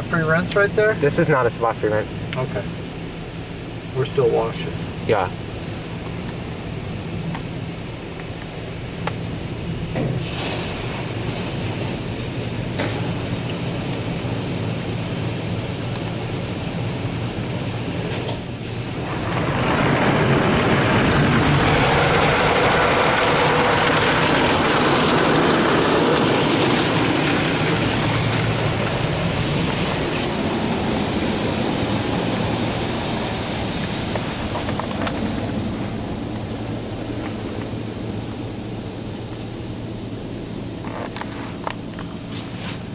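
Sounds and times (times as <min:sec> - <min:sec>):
car wash water rushing: 0:00.0 - 0:42.9
steady low hum: 0:10.7 - 0:42.9.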